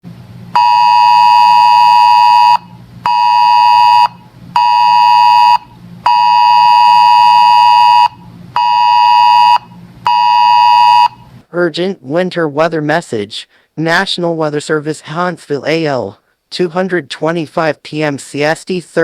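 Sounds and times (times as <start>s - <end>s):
weather alert radio alarm beeps: 0.6s - 11.3s.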